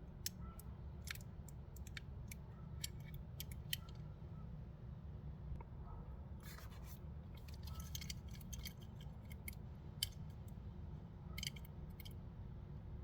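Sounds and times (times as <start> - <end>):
plastic packaging clicking and scraping: 6.4 - 10.2.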